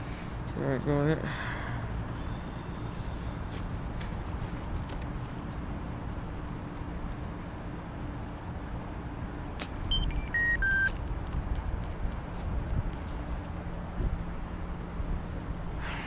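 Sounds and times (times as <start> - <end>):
electronic beeps: 9.6 - 12.2.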